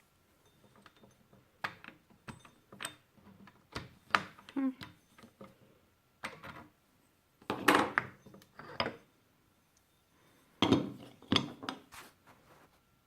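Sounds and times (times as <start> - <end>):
hard objects clinking and knocking: 10.6 - 11.9.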